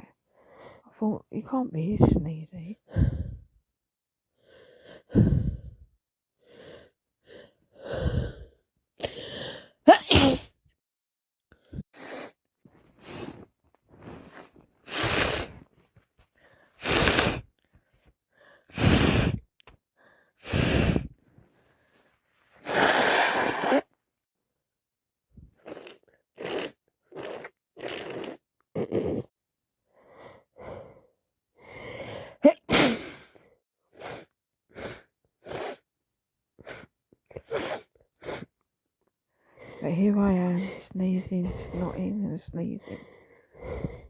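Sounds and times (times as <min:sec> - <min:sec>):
gasping breaths: 0:02.9 - 0:03.5, 0:04.4 - 0:09.8, 0:16.4 - 0:22.0, 0:42.8 - 0:44.0
person sneezing: 0:09.9 - 0:10.5, 0:32.5 - 0:33.2.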